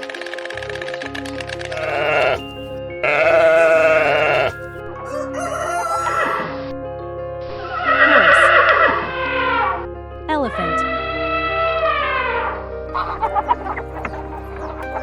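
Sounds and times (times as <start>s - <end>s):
background music with held notes: 0.0s - 15.0s
rooster crowing: 1.7s - 2.4s, 3.0s - 6.5s
farm animal calls: 1.7s - 6.4s.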